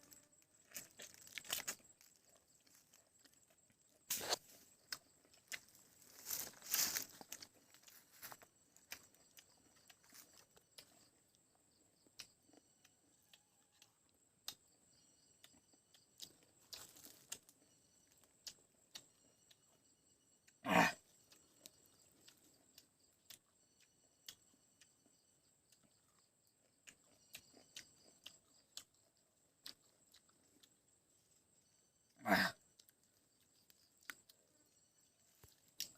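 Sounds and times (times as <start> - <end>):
chewing and wet sucking: 0.0 - 11.2, 14.9 - 25.9
insects trilling: 0.0 - 35.9.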